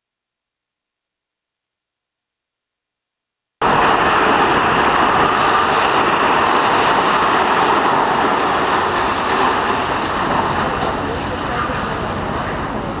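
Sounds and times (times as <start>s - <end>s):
demolition machinery running: 3.6s - 13.0s.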